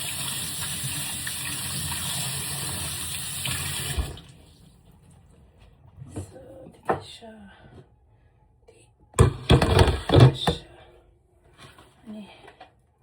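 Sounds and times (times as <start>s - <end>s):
water running: 0.0s - 5.2s.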